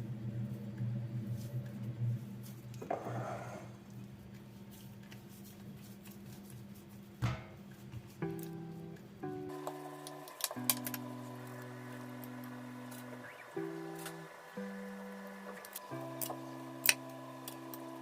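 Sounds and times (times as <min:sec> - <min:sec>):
sharp knock: 0:07.2 - 0:07.6
steady low hum: 0:07.2 - 0:18.0
music: 0:08.0 - 0:18.0.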